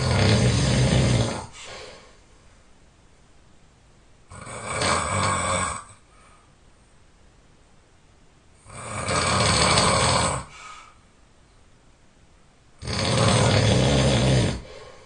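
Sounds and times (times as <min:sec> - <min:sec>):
person snoring loudly: 0:00.0 - 0:01.6, 0:04.3 - 0:06.0, 0:08.6 - 0:10.6, 0:12.8 - 0:14.8.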